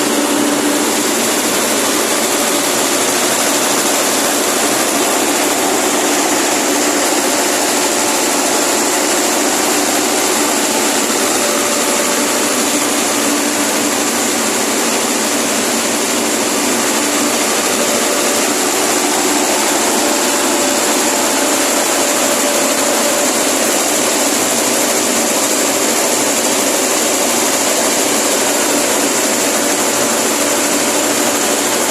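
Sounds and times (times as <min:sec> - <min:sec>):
engine running steadily: 0:00.0 - 0:31.9.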